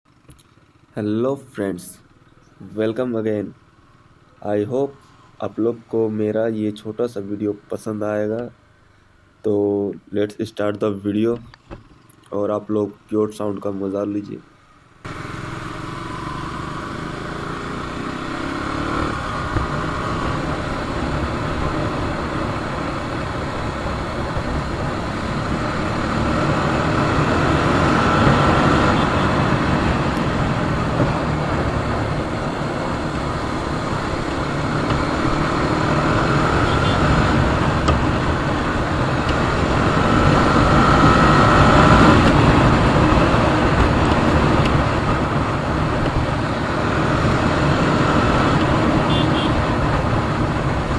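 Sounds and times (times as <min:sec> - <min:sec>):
motorcycle engine accelerating: 0:15.0 - 0:50.9.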